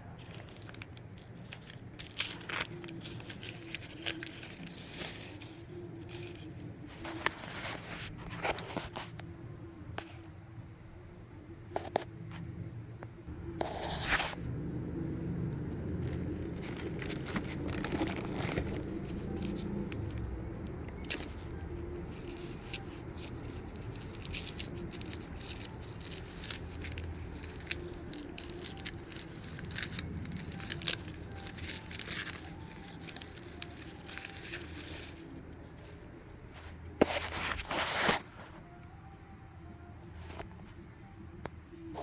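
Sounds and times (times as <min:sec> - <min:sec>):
clicks and scrapes of handling: 0:00.0 - 0:09.3, 0:15.6 - 0:38.9
low steady rumble: 0:12.2 - 0:37.0.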